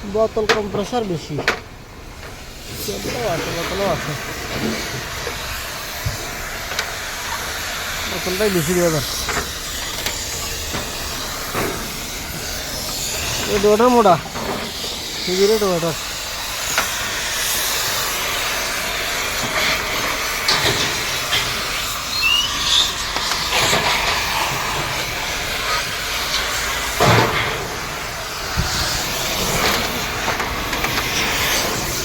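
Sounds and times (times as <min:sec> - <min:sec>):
cutting torch hissing: 0:00.8 - 0:32.0.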